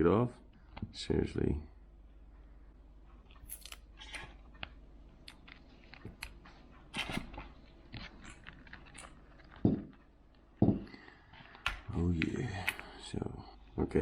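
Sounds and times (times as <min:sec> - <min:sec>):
small clicks and scratches: 0:03.2 - 0:10.4
dull knock: 0:10.6 - 0:10.9.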